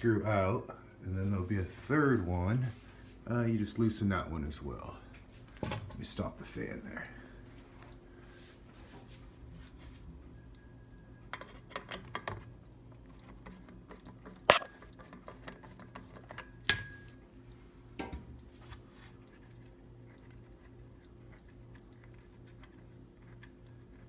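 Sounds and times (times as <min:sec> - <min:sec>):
tools clinking on metal housing: 0:14.5 - 0:15.2, 0:16.3 - 0:17.2.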